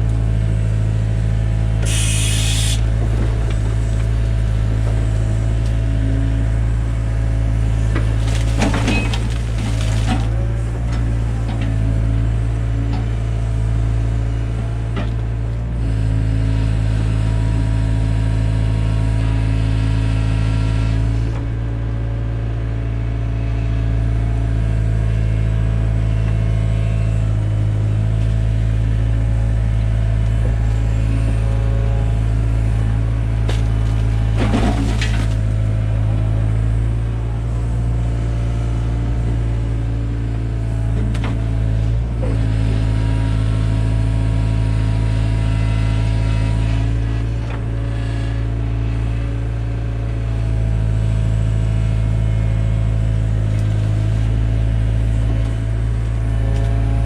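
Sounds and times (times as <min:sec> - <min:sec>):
excavator diesel engine running: 0:00.0 - 0:57.0
hydraulic whine: 0:01.7 - 0:05.3.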